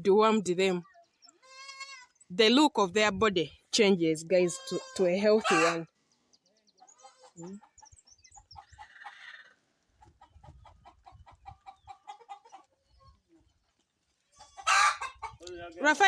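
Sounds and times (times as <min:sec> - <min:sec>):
chickens clucking: 0:04.6 - 0:05.9, 0:06.6 - 0:15.6.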